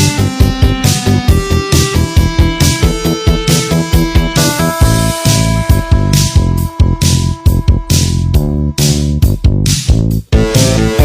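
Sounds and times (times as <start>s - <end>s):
held synth notes: 0.0s - 8.8s
fast steady drum beat: 0.0s - 11.0s.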